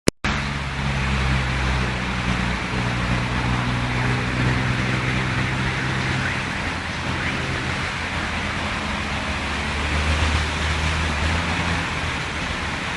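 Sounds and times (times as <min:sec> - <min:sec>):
low engine hum: 0:00.3 - 0:12.9.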